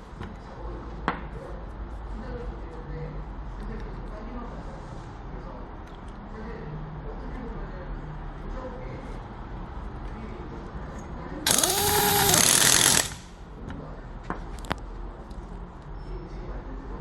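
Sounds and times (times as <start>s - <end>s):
capping machine spindle whirring: 11.5s - 13.3s
sharp clicks: 11.5s - 13.3s.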